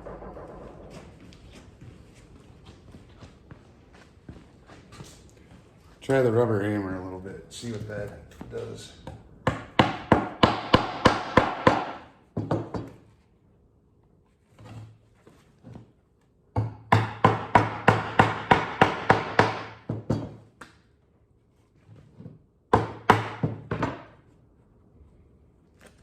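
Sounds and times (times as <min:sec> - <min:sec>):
rubber hammer striking wood: 0:09.5 - 0:12.8, 0:16.6 - 0:20.4, 0:22.7 - 0:24.1.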